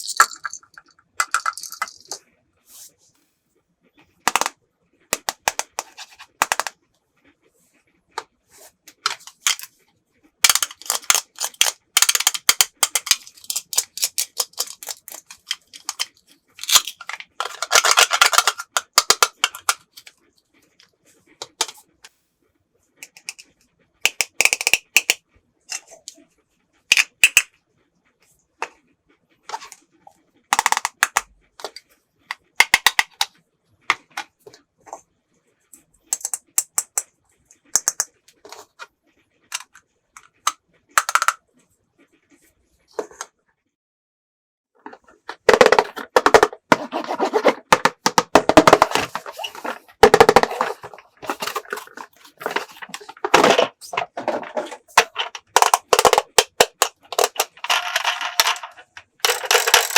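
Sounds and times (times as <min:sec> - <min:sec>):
plastic toy pieces clattering: 0:00.0 - 0:02.2, 0:04.3 - 0:06.8, 0:09.1 - 0:09.7, 0:10.4 - 0:20.1, 0:24.1 - 0:25.9, 0:26.9 - 0:27.5, 0:30.5 - 0:31.8, 0:32.6 - 0:33.3, 0:39.5 - 0:41.4, 0:44.9 - 0:59.9.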